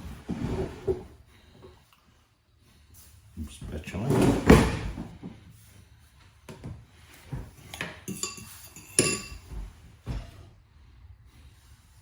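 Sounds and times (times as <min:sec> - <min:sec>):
metal cookware clanking: 0:07.8 - 0:09.5.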